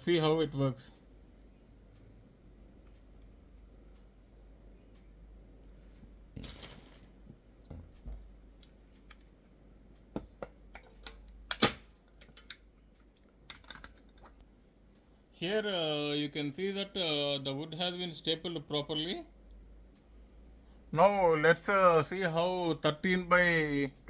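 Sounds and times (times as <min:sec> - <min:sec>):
staple gun firing into wood: 0:11.5 - 0:11.9.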